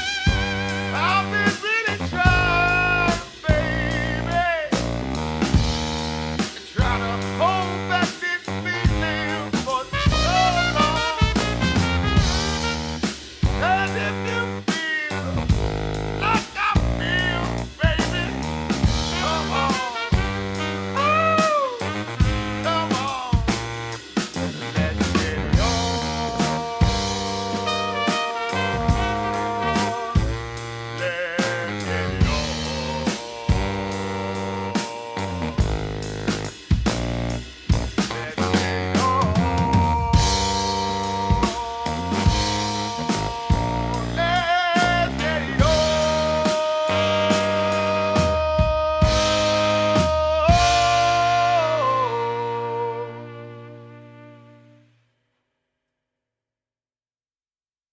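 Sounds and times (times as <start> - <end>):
drum kit beat: 0.0 - 52.3
brass band playing: 0.0 - 54.9.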